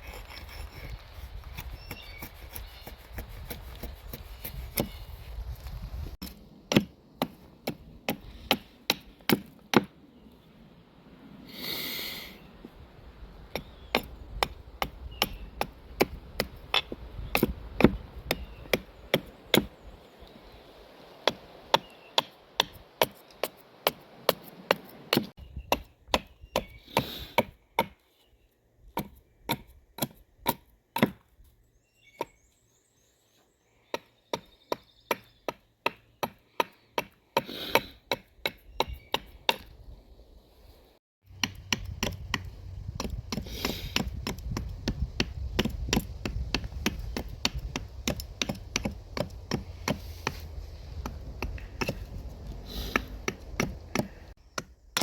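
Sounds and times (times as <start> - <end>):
axe chopping into wood: 6.3 - 9.9, 13.5 - 19.7, 41.3 - 55.0.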